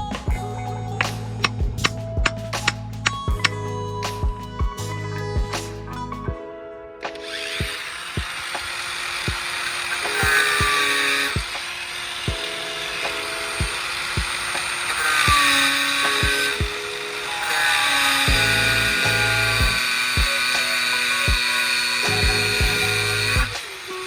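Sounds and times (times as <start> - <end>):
background music with beat: 0.0 - 8.7, 10.0 - 11.7, 12.3 - 24.0
power tool whirring: 7.1 - 24.0.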